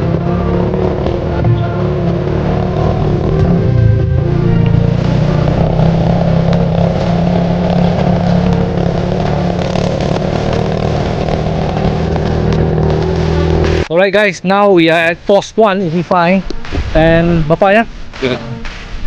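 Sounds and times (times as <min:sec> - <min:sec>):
motorcycle engine running: 0:00.0 - 0:13.9.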